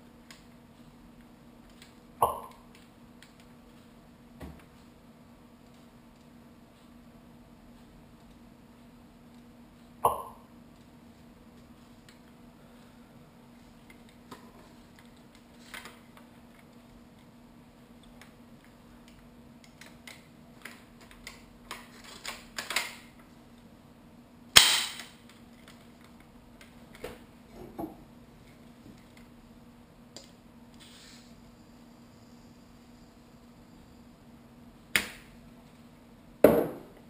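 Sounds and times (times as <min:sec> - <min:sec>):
brief gas hiss: 0:30.8 - 0:31.4.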